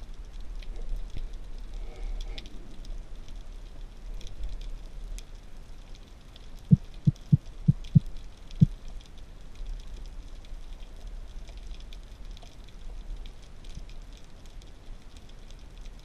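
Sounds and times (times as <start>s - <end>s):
faint crackling hiss: 0.0s - 16.0s
dull low underwater thumps: 6.7s - 8.7s.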